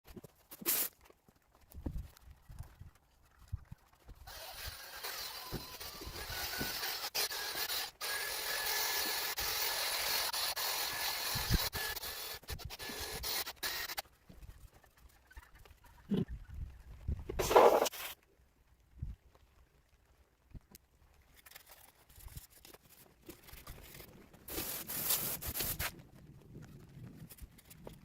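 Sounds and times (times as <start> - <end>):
wire brush scrubbing metal: 17.4 - 18.1.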